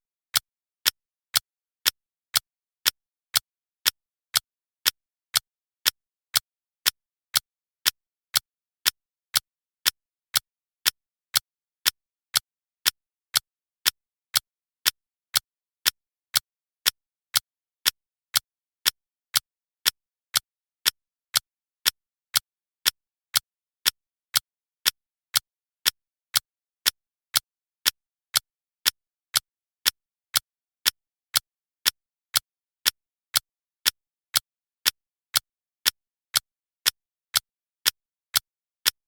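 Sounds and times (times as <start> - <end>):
timer ticking: 29.8 - 39.0.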